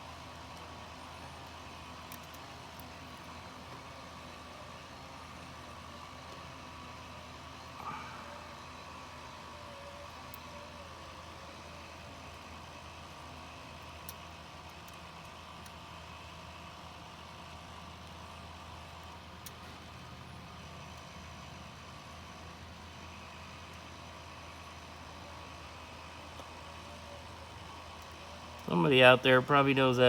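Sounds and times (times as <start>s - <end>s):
steady low hum: 0.0s - 16.6s.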